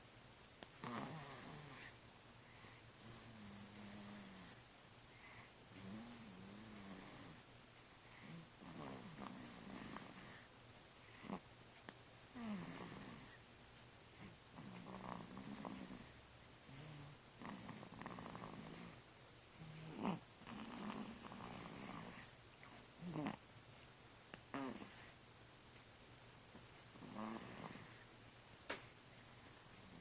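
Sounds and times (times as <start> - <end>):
person snoring: 0.8 - 1.9, 8.2 - 10.5, 19.6 - 22.3, 24.5 - 25.1, 27.0 - 28.0.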